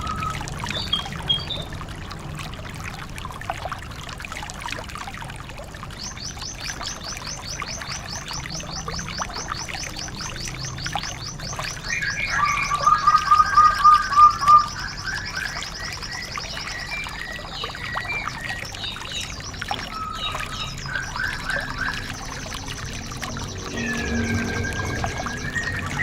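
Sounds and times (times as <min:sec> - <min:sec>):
lower whistled bird notes: 0:00.0 - 0:01.7, 0:07.2 - 0:26.0
fast high bird trills: 0:23.1 - 0:26.0.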